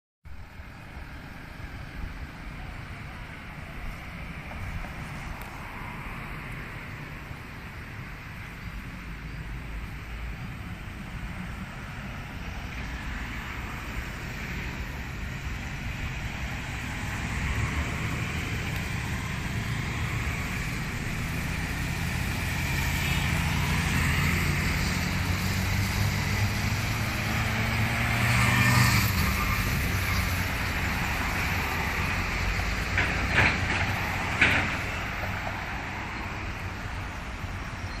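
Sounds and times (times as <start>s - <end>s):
vehicles driving past: 0.3s - 38.0s.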